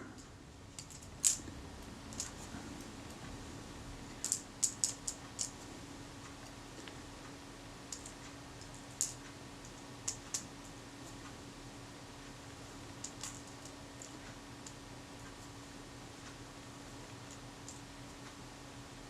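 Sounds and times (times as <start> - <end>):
faint steady hum: 0.0 - 19.0.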